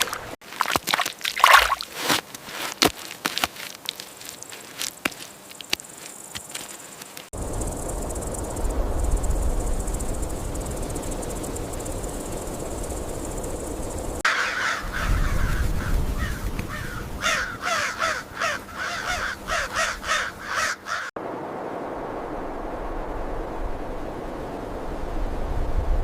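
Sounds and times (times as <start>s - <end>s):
faint high insect buzz: 4.5s - 14.2s
crow cawing: 14.3s - 21.1s.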